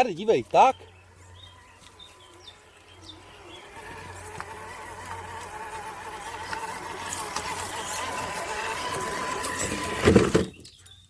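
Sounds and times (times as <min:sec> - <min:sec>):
electric motor whining: 0:01.0 - 0:10.6.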